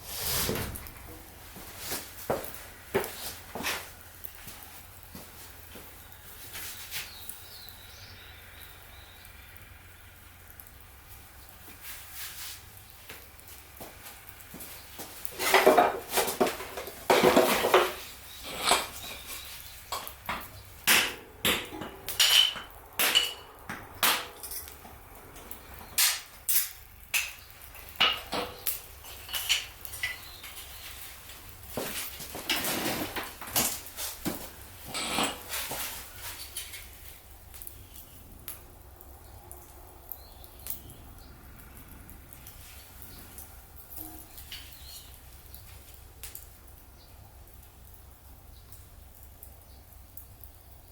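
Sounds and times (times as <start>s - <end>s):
rustling or scraping: 0.0s - 7.2s, 11.7s - 20.8s, 28.4s - 38.1s, 42.3s - 46.0s
metal clinks and knocks: 15.4s - 37.1s.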